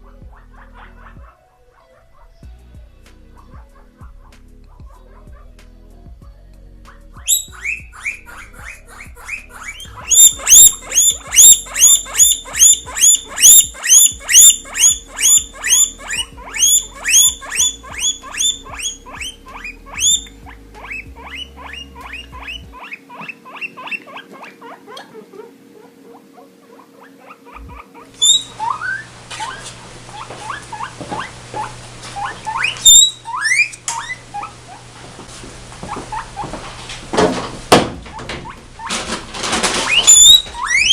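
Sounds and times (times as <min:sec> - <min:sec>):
guinea pigs squealing: 0:00.0 - 0:02.5, 0:06.9 - 0:40.9
low steady hum: 0:02.3 - 0:23.3.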